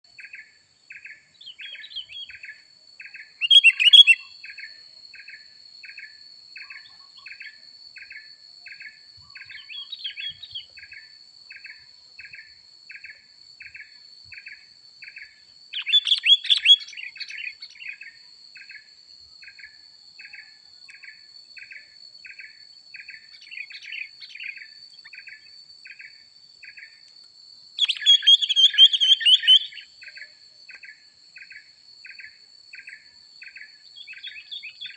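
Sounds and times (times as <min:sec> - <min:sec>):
songbirds chirping and twittering: 0:00.0 - 0:34.9
steady regular chirping: 0:00.2 - 0:19.7.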